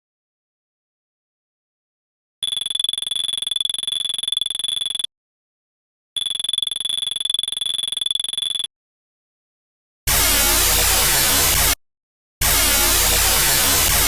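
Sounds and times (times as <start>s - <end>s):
electronic laser buzzing tone: 10.1s - 11.8s, 12.4s - 14.0s.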